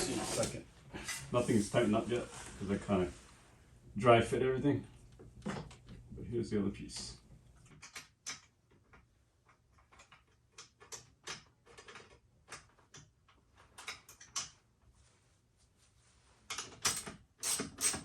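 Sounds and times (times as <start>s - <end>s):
metal parts clicking and tapping: 7.6s - 14.6s, 16.5s - 18.0s.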